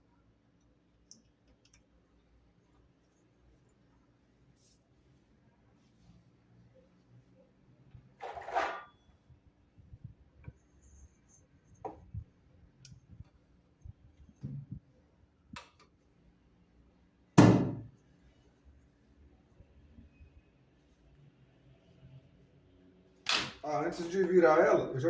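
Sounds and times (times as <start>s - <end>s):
tool scraping: 8.2s - 9.0s.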